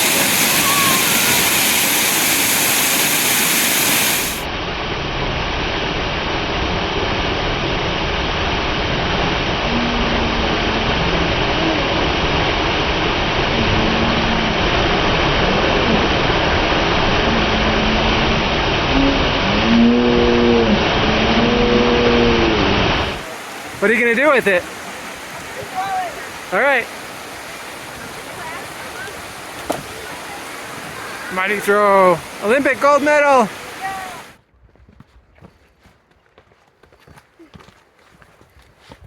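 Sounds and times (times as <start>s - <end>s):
waterfall rushing: 0.0s - 4.8s, 5.4s - 34.4s
dull rushing with low rumble: 4.2s - 32.5s.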